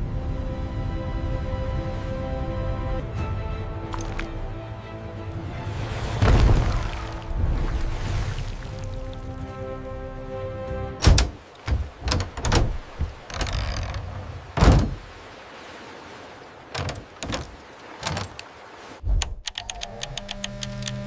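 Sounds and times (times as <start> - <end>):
music: 0.0 - 11.3
thumps and knocks: 11.0 - 14.0, 14.6 - 15.0, 16.7 - 18.4.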